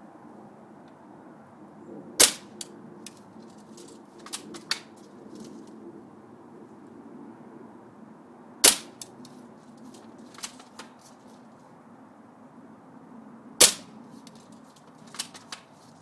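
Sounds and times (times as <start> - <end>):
airsoft rifle shots: 2.2 - 2.7, 8.6 - 9.2, 13.6 - 14.0
light clicks and knocks: 14.2 - 15.8.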